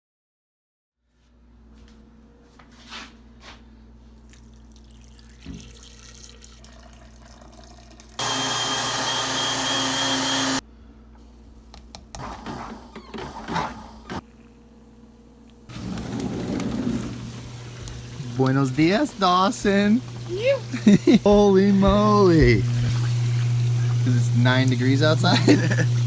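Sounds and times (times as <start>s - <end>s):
steady low hum: 13.8s - 26.0s
running water: 15.7s - 26.0s.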